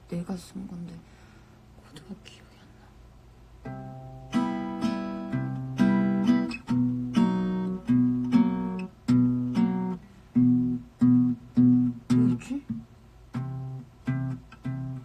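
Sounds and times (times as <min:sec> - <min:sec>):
acoustic guitar strumming chords: 0:03.6 - 0:15.0.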